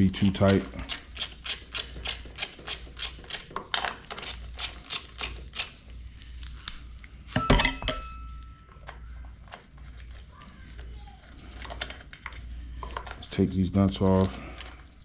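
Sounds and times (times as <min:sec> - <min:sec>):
metallic clatter with ring: 0:07.3 - 0:09.0.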